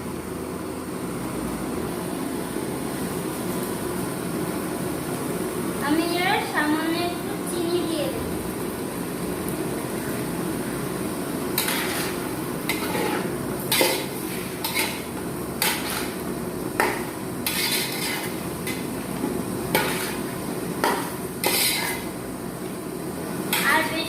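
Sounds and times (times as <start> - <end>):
spoon scraping a cooking pan: 11.5 - 16.2, 16.8 - 22.2.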